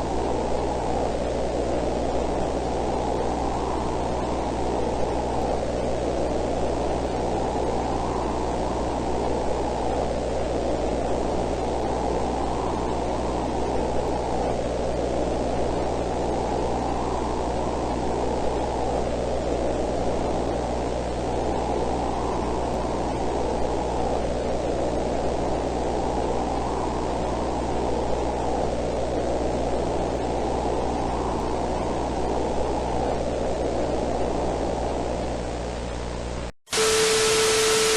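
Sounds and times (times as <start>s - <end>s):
low steady hum: 0.0s - 37.9s
rushing static noise: 0.0s - 37.9s.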